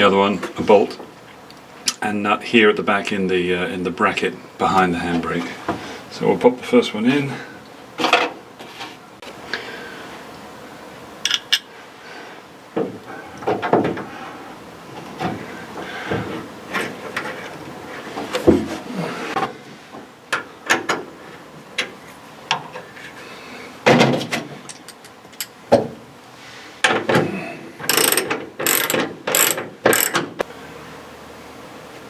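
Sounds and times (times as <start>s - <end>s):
ratchet wrench clicking: 27.9s - 30.2s.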